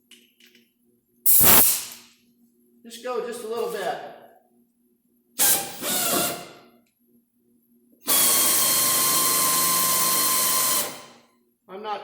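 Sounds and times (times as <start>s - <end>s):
electric drill drilling into steel: 8.1s - 11.2s.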